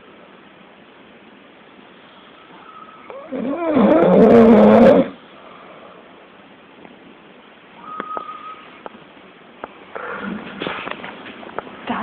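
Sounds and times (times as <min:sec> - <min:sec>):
loud deep snore: 0:03.2 - 0:05.2
faint short high beep: 0:07.8 - 0:08.7.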